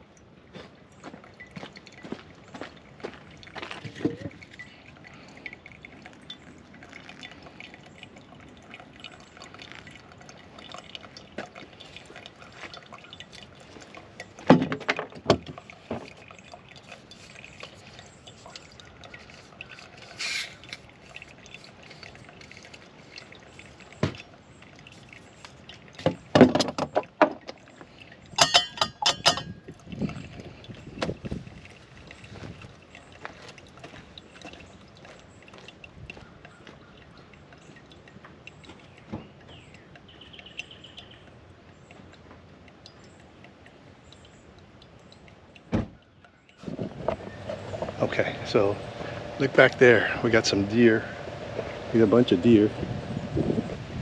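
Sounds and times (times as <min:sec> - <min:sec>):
liquid pouring and dripping: 0:00.0 - 0:54.0
metallic clinks of cookware: 0:28.3 - 0:29.7.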